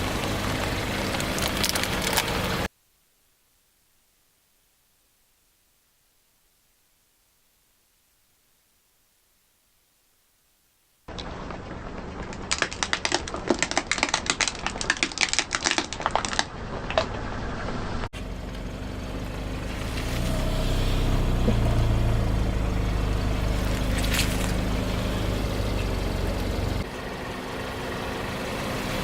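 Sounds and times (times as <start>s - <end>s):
car engine running: 0.0s - 2.7s, 16.0s - 29.0s.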